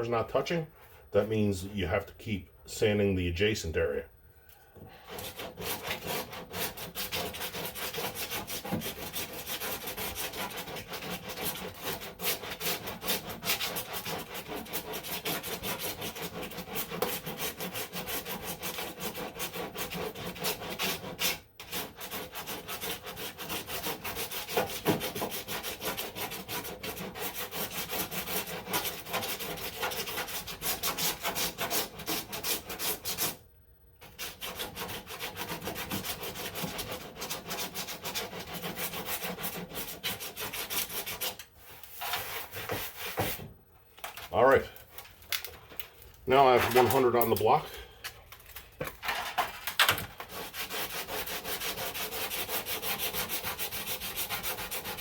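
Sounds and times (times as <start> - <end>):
sandpaper rasping on filler: 5.0 - 33.4, 34.0 - 43.5, 46.3 - 47.3, 50.2 - 55.0.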